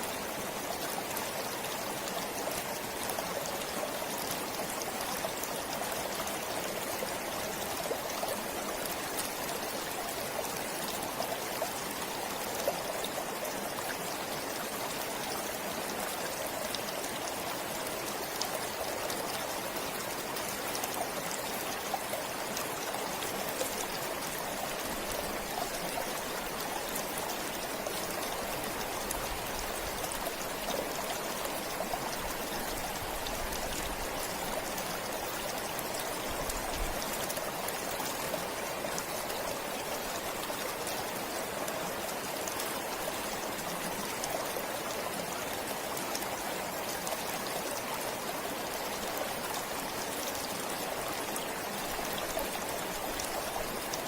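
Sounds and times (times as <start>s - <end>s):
stream flowing: 0.0s - 54.0s.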